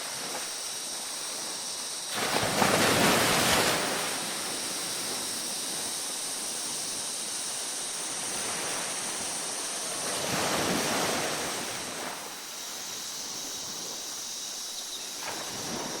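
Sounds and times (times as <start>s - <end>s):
surf hiss: 0.0s - 16.0s
waves washing onto beach: 0.0s - 16.0s.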